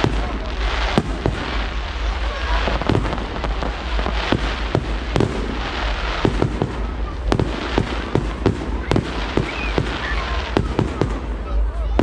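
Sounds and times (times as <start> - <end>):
fireworks bangs: 0.0 - 12.0
steady background hiss: 0.0 - 12.0.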